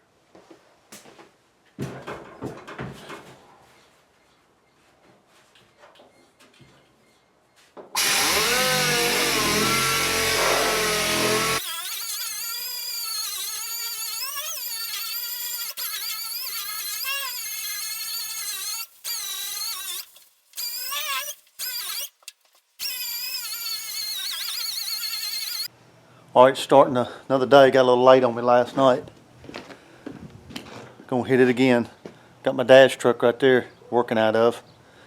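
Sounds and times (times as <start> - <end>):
sander whining on sheet metal: 8.0 - 22.2, 22.8 - 25.7.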